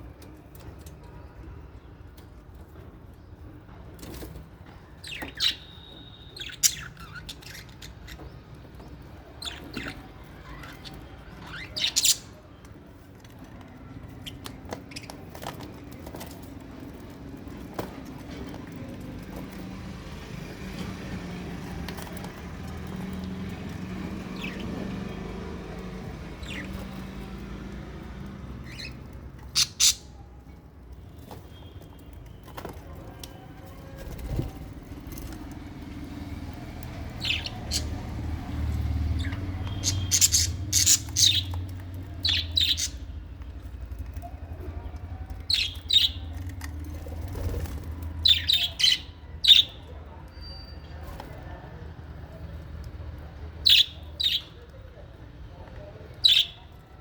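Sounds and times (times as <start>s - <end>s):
small parrots calling: 5.0s - 8.3s, 9.4s - 12.4s, 22.0s - 30.2s, 36.8s - 43.2s, 45.4s - 46.5s, 48.2s - 50.8s, 53.6s - 54.6s, 56.2s - 56.7s.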